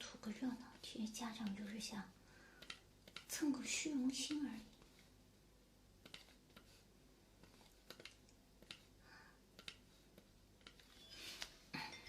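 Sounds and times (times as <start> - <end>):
faint light clicks and taps: 2.6 - 3.4.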